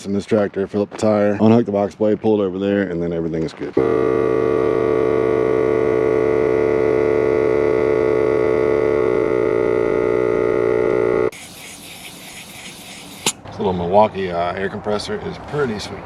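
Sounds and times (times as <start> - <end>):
air compressor whining: 3.8 - 13.4.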